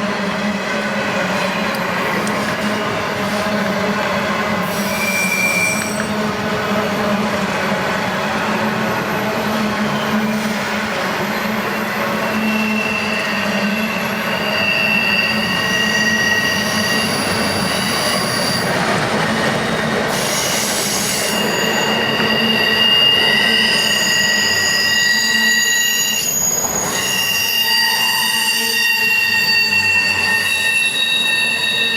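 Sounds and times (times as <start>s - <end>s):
train wheels squealing: 4.5s - 6.3s, 8.2s - 31.9s
train rumble: 12.9s - 24.7s.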